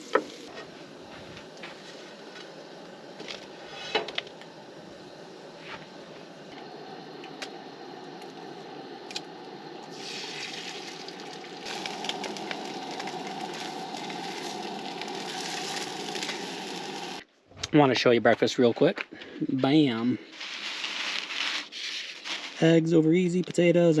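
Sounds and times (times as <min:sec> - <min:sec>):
food sizzling in a pan: 0:00.0 - 0:17.2.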